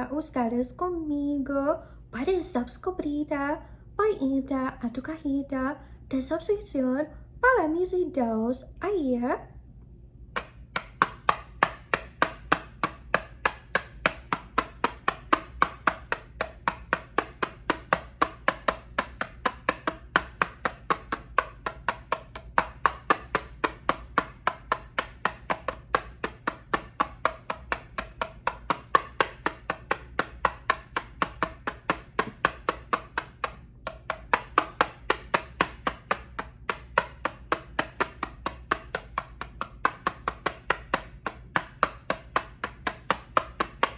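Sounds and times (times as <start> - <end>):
rapid tapping on eyeshadow palette: 10.4 - 43.9.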